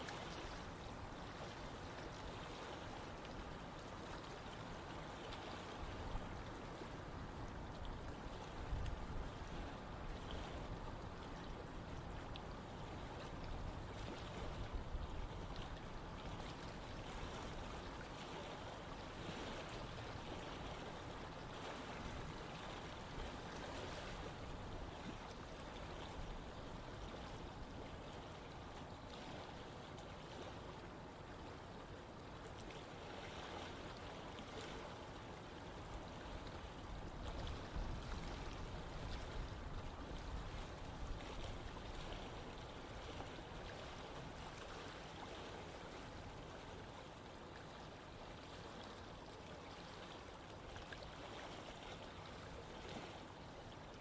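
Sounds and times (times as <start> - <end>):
stream flowing: 0.0 - 54.0
small water splashes: 32.5 - 54.0.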